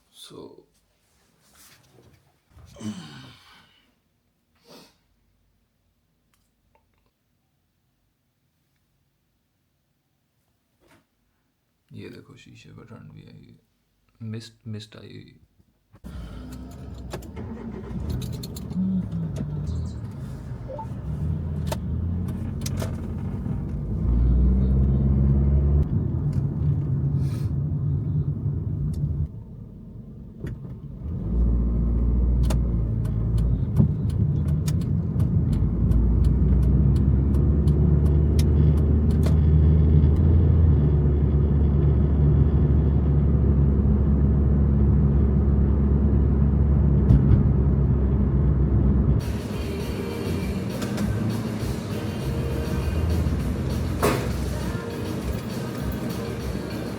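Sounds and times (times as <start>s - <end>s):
car engine and road rumble: 16.0s - 56.9s.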